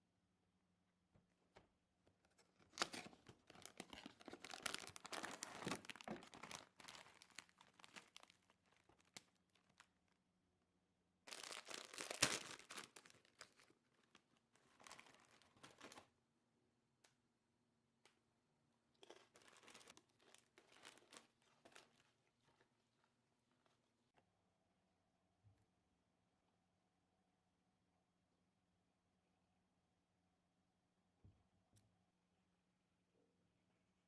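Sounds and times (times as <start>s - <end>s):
packaging crinkling and tearing: 2.3s - 10.0s, 11.3s - 16.1s, 19.0s - 22.6s.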